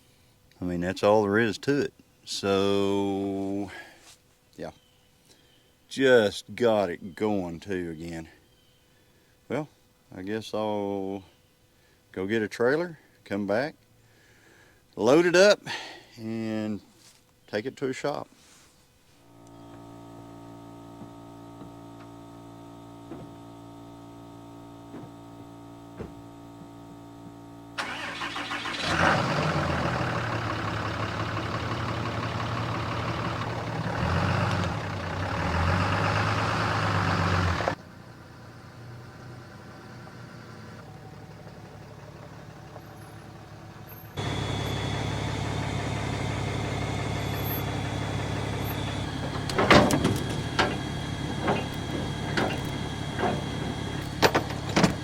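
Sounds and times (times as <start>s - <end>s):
vehicle engine running: 19.4s - 55.0s.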